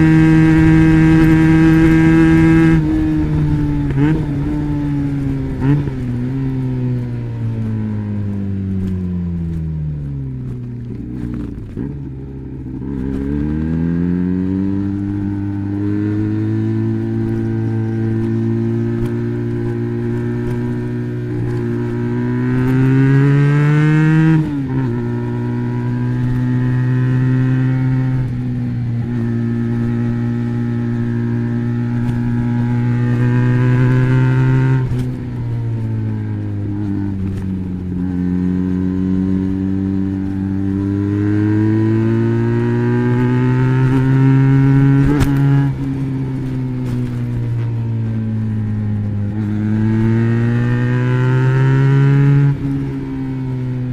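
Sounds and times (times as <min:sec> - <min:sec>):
motorcycle engine revving: 0:00.0 - 0:53.9.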